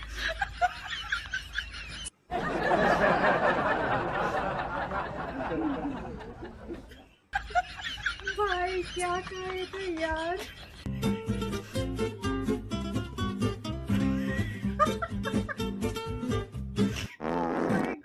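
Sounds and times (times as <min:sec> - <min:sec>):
people laughing and snickering: 0:00.0 - 0:12.2, 0:13.9 - 0:15.8.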